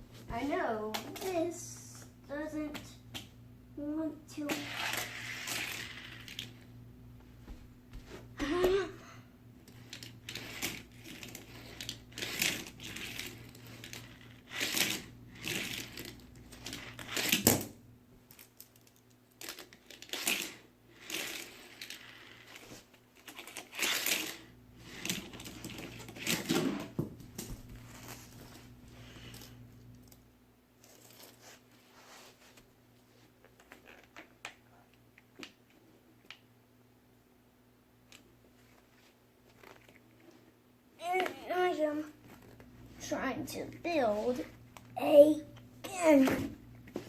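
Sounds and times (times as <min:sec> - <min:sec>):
plastic track pieces clicking: 0:04.5 - 0:06.5, 0:09.8 - 0:17.7, 0:18.3 - 0:22.6, 0:23.2 - 0:26.4.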